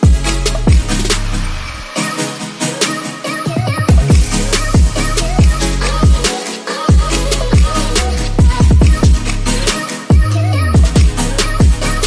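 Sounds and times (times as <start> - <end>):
electronic dance music: 0.0 - 12.0
heavy bass notes dropping in pitch: 0.1 - 1.9, 4.1 - 6.3, 7.2 - 9.7.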